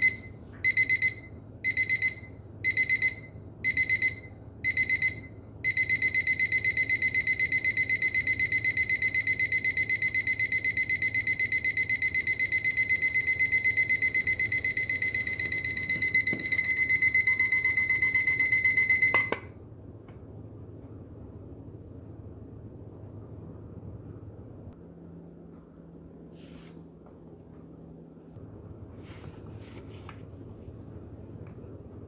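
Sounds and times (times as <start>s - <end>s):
alarm clock beeping rapidly: 0.0s - 19.5s
alarm clock click: 0.0s - 19.5s.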